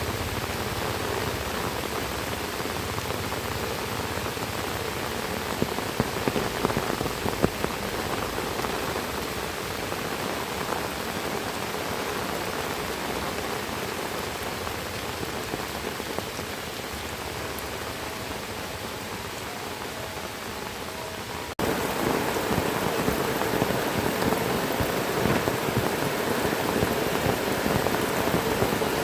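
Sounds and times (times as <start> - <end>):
heavy rain falling: 0.0 - 29.0
sharp raindrop hits: 21.6 - 29.0.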